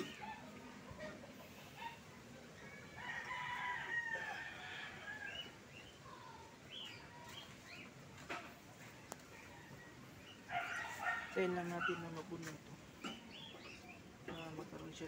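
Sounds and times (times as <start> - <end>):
rooster crowing: 2.7 - 5.4.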